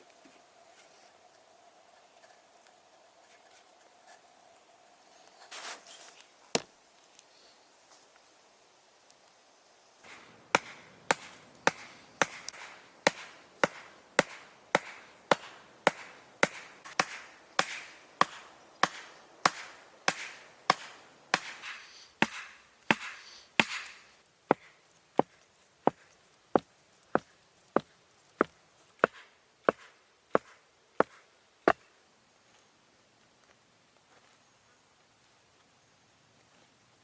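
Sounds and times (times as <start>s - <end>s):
axe chopping wood: 10.1s - 24.7s.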